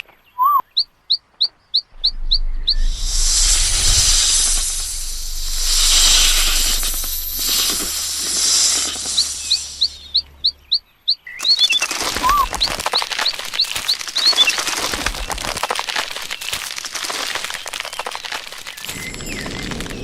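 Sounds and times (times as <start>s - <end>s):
crackly outdoor ambience: 0.0s - 20.0s
high bird chirps: 0.3s - 14.6s
hissing noise: 2.0s - 10.2s.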